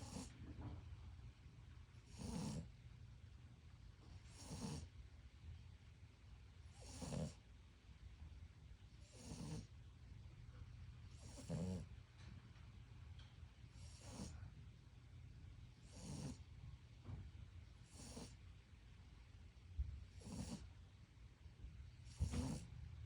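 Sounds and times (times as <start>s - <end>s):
dog snoring: 0.0s - 0.8s, 2.0s - 2.8s, 4.0s - 5.0s, 6.6s - 7.5s, 9.0s - 9.8s, 11.1s - 12.0s, 13.7s - 14.6s, 15.8s - 16.5s, 17.8s - 18.4s, 20.1s - 20.7s, 22.0s - 22.8s.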